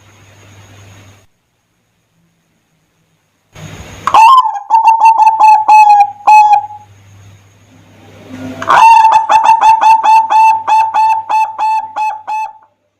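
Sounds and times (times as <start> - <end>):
dove cooing: 4.1 - 6.9, 7.8 - 12.8.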